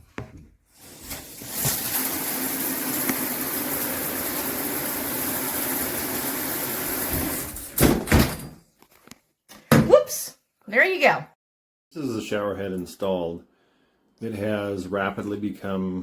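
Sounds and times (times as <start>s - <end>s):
shower head spraying water: 0.8s - 7.8s.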